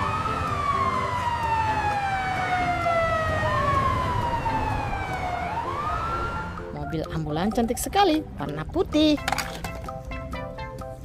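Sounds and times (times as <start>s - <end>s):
ambulance siren wailing: 0.0s - 6.8s.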